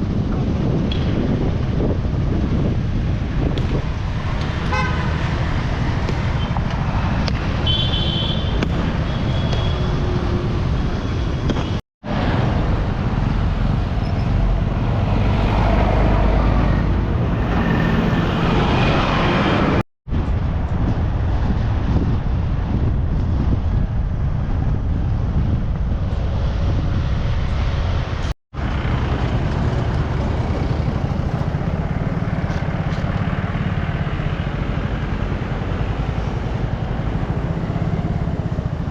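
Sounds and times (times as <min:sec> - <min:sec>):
road traffic: 0:00.0 - 0:38.9
wind rumbling on microphone: 0:00.0 - 0:38.9
vehicle horns honking: 0:04.7 - 0:05.2, 0:07.6 - 0:09.9.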